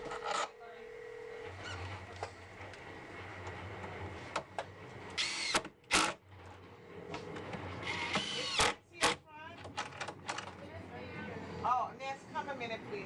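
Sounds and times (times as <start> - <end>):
cordless power drill running: 5.2 - 6.2, 7.8 - 8.8.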